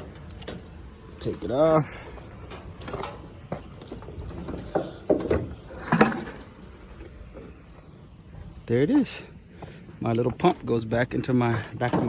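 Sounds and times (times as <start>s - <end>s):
pump and hose fittings knocking: 2.4s - 6.5s, 11.5s - 12.0s.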